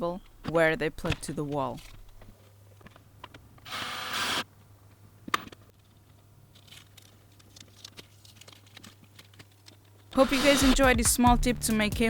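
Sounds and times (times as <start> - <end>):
power drill driving a screw: 3.6 - 4.5, 10.1 - 10.9.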